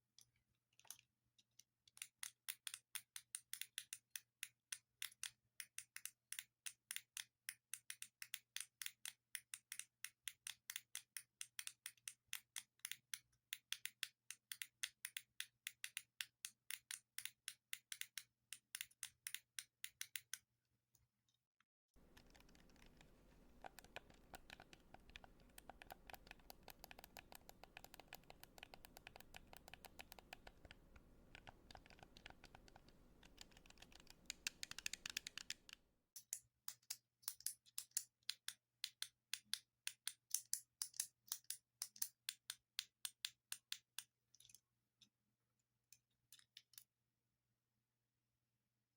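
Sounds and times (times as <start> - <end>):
steady background hiss: 22.0 - 35.6
buttons clicking: 22.1 - 35.6.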